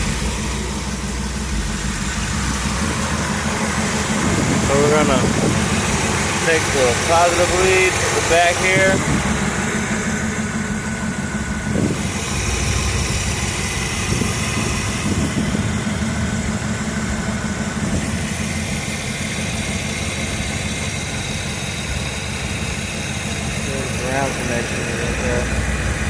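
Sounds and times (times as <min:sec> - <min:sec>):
car engine idling: 0:00.0 - 0:26.0.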